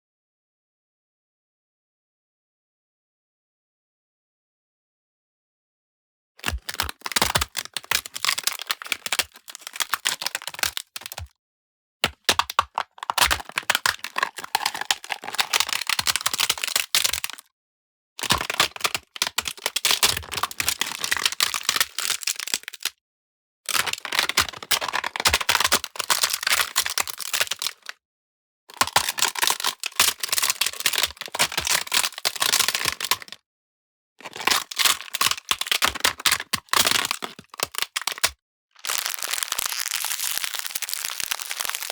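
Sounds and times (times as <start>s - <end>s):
ice cracking and crackling: 38.8s - 41.9s.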